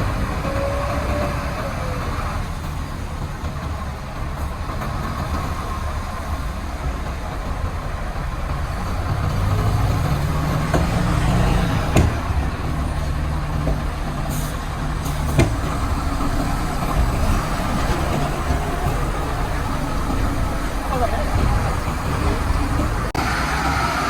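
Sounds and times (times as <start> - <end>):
diesel truck engine droning: 0.0 - 24.0
air hissing: 9.9 - 23.2
sharp knocks: 10.0 - 14.3, 15.0 - 23.1.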